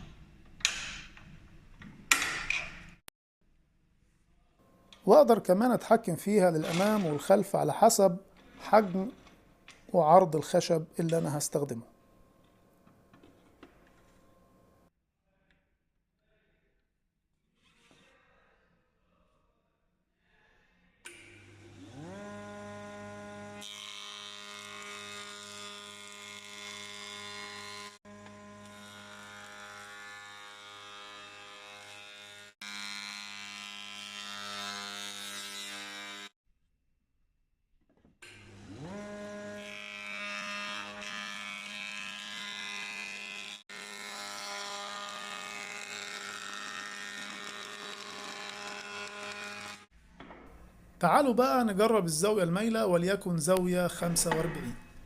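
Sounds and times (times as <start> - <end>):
jointer-planer motor whining: 38.3 - 44.1.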